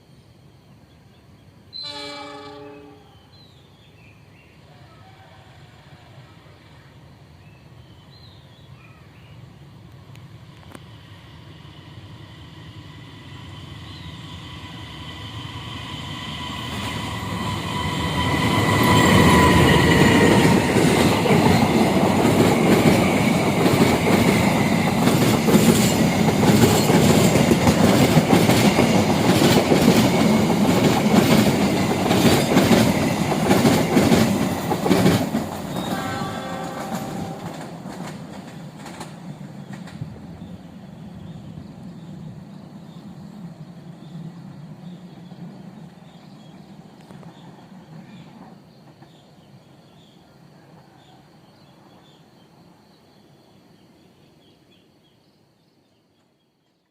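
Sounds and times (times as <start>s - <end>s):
train rumbling past: 1.3s - 54.8s
train horn: 1.7s - 3.3s, 35.7s - 37.8s.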